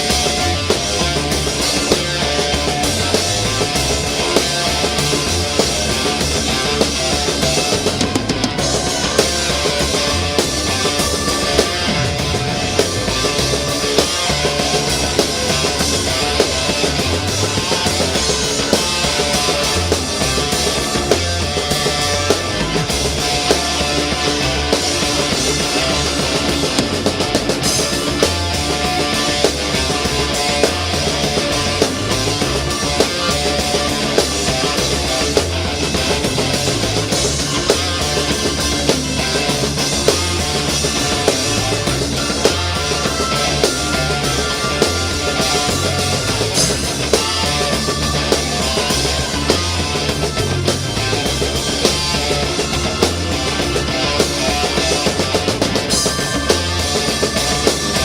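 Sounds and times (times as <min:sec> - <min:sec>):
rock music: 0:00.0 - 0:58.0.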